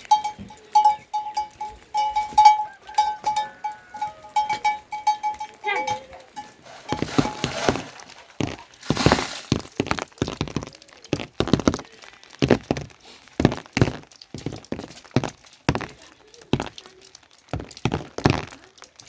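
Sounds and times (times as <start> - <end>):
irregular knocks and thuds: 4.4 - 11.8, 12.4 - 16.0, 17.5 - 18.5.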